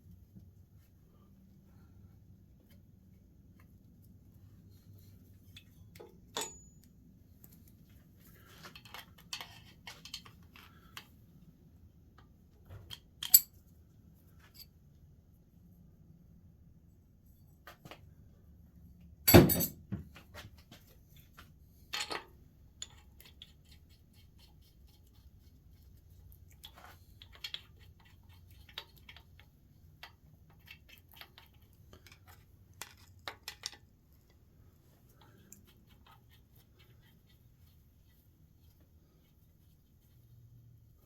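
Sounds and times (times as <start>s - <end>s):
light metal clinks and clicks: 5.3s - 7.0s
metal tools clanking: 5.4s - 6.9s.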